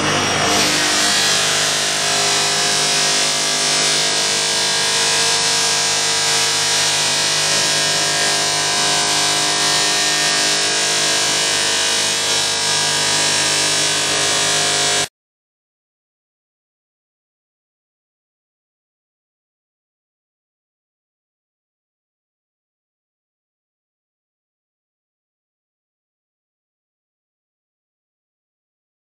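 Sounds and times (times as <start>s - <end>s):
power tool sanding metal: 0.0s - 15.1s.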